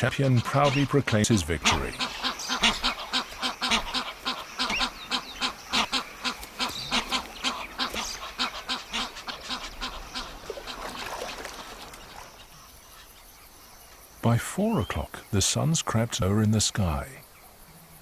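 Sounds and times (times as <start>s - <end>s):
goose honking: 0.3s - 12.5s.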